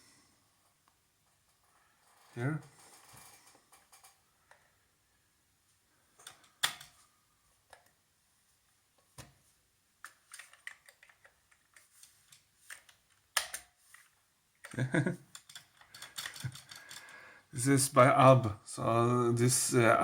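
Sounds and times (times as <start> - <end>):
keyboard and mouse clicks: 10.0 - 13.7.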